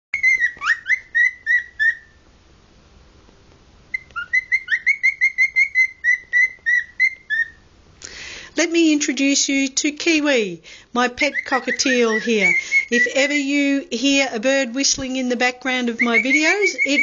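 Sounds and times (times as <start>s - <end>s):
cockatiel whistling: 0.1s - 2.2s, 3.9s - 7.6s, 11.2s - 13.2s, 16.0s - 17.0s.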